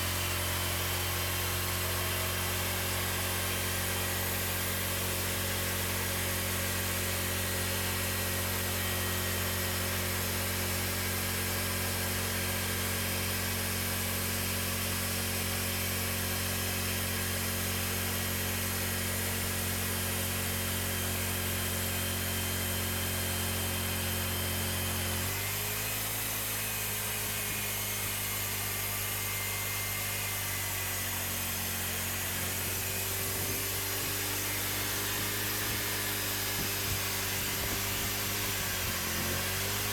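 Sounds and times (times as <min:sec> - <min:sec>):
engine hum: 0:32.3 - 0:39.9.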